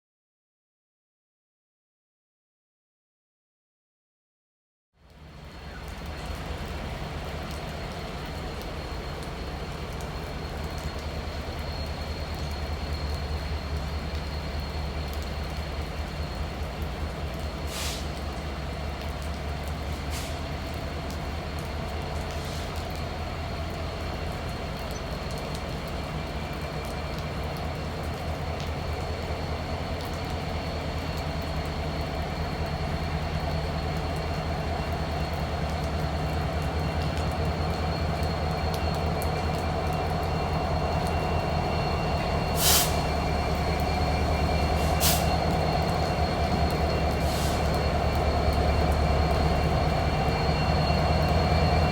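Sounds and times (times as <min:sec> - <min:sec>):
diesel locomotive rumble: 0:05.1 - 0:51.9
thin wheel squeal: 0:40.4 - 0:51.9.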